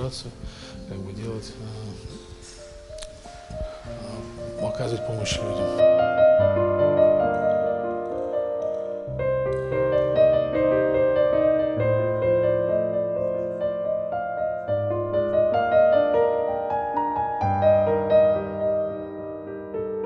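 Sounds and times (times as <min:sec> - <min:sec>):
slow piano music: 0:00.0 - 0:20.0.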